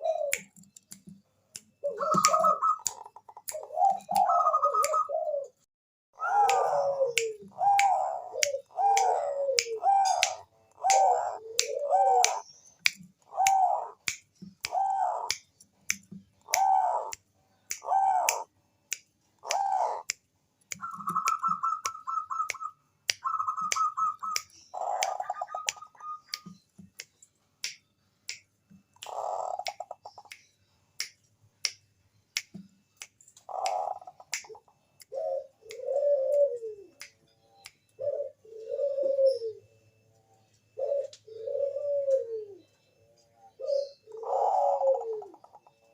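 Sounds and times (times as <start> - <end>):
dove cooing: 0.0 - 0.6, 1.8 - 5.6, 6.2 - 12.5, 13.2 - 15.3, 16.4 - 17.1, 17.8 - 18.5, 19.4 - 20.1, 20.8 - 26.3, 29.1 - 30.2, 33.5 - 37.0, 38.0 - 39.7, 40.8 - 42.7, 43.4 - 45.8
sharp ticking clicks: 0.3 - 5.0, 6.4 - 38.0.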